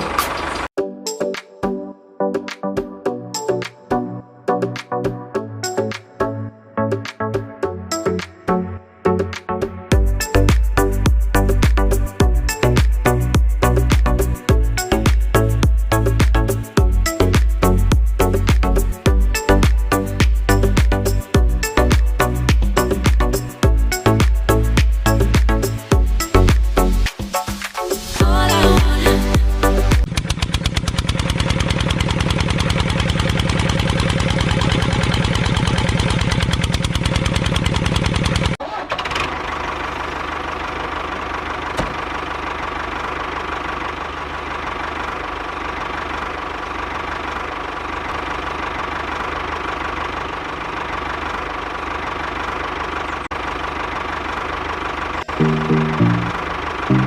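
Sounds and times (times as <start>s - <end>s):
engine chugging: 0.0s - 0.7s, 28.2s - 57.0s.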